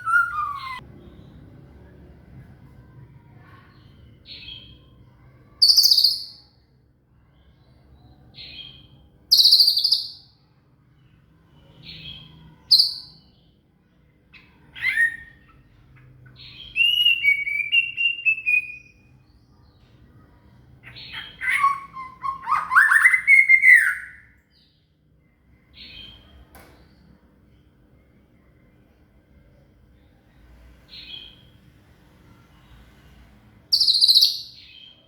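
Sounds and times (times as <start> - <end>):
bird singing whistled phrases: 0.0 - 0.8, 16.6 - 19.0, 21.1 - 24.3, 33.7 - 34.8.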